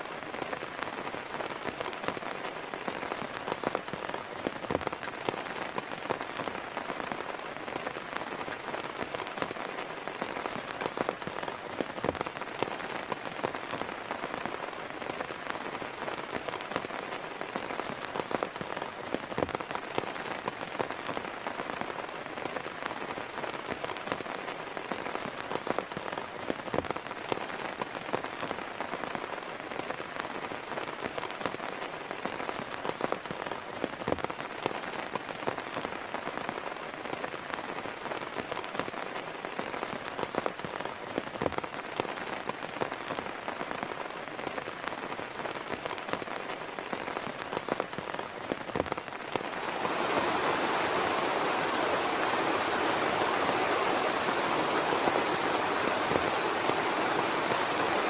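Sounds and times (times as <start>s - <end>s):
heavy rain falling: 0.0s - 58.0s
raindrops ticking on a surface: 0.0s - 58.0s.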